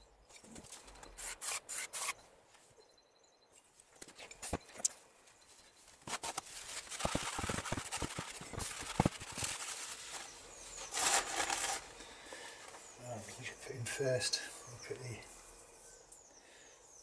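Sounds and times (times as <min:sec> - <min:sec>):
rough rubbing of metal parts: 0:06.3 - 0:11.8.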